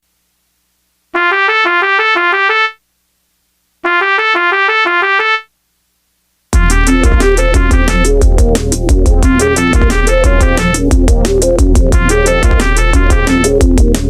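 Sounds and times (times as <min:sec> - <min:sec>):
electronic dance music: 0:01.2 - 0:02.8, 0:03.9 - 0:05.4, 0:06.6 - 0:11.1, 0:11.7 - 0:13.8
musical bus horn melody: 0:01.2 - 0:02.8, 0:03.8 - 0:05.5, 0:06.6 - 0:08.2, 0:09.3 - 0:10.8, 0:12.0 - 0:13.6.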